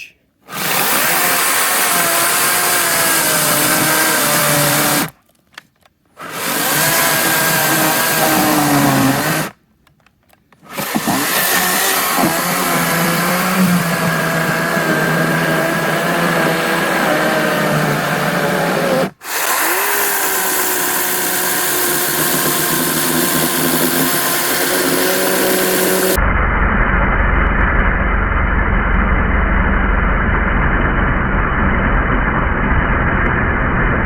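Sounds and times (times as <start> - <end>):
electric chainsaw cutting log: 0.4 - 5.2, 6.2 - 9.6, 10.6 - 26.2.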